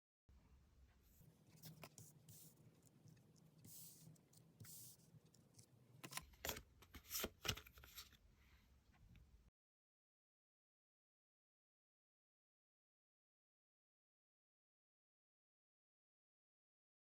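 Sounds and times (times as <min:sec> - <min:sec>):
cards sliding: 0:03.6 - 0:08.2.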